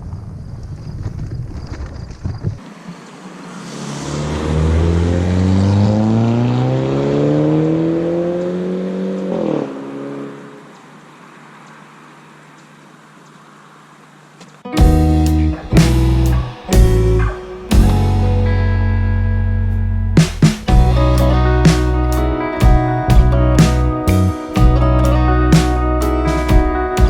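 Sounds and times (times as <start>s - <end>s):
wind rumbling on microphone: 0.0s - 2.6s
vehicle driving past: 2.6s - 12.3s.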